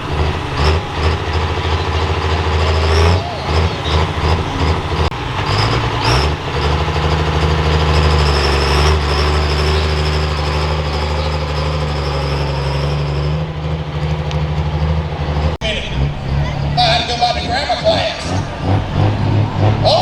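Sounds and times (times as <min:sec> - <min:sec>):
high turbo whistle: 0:00.0 - 0:05.2
diesel engine at full throttle: 0:00.0 - 0:20.0.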